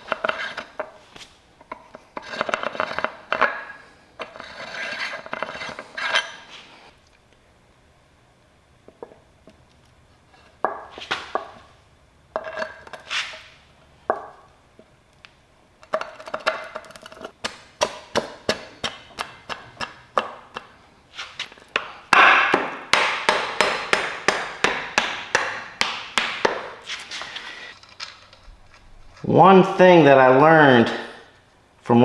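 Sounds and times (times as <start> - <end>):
sharp metallic taps: 21.8 - 26.8
knocks on metal: 22.1 - 26.7.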